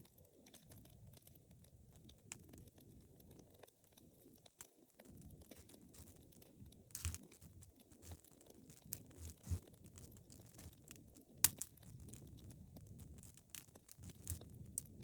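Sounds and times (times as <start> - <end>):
wood fire crackling: 0.5 - 15.0
sharp pops of fire: 11.4 - 12.3.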